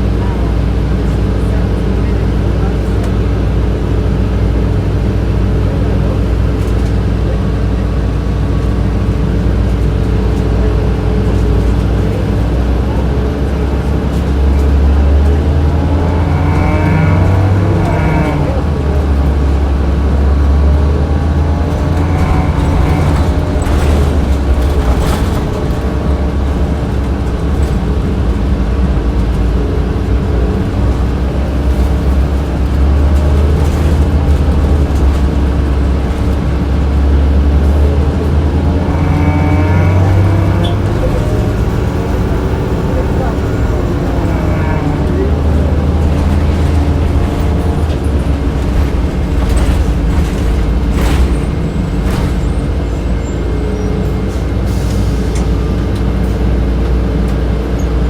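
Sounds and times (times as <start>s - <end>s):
bus engine rumble: 0.0s - 58.0s
sharp rattles and knocks: 43.4s - 53.2s.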